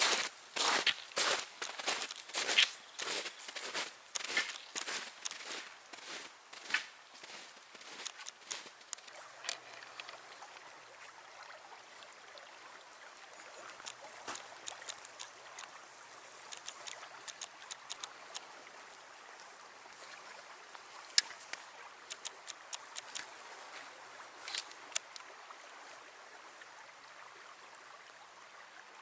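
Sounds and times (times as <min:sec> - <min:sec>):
creek water running: 0:00.0 - 0:29.0
small sharp ticks and drips: 0:00.0 - 0:29.0.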